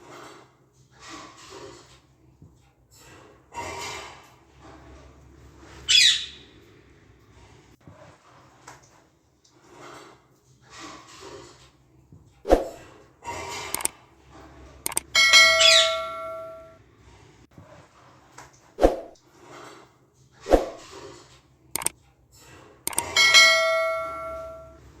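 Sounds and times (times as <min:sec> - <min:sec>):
parakeet squawk: 0:05.9 - 0:06.5
metallic ringing: 0:14.9 - 0:16.8, 0:22.9 - 0:24.9.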